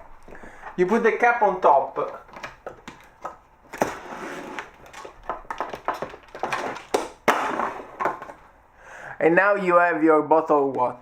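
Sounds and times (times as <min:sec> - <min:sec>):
can crusher crushing plastic bottle: 0:03.7 - 0:08.3.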